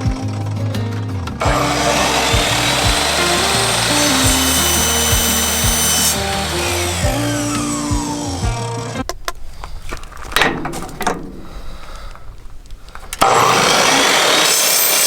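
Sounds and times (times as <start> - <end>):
background music with beat: 0.0 - 9.1
power tool whining on pipe: 1.4 - 9.1, 13.1 - 15.0.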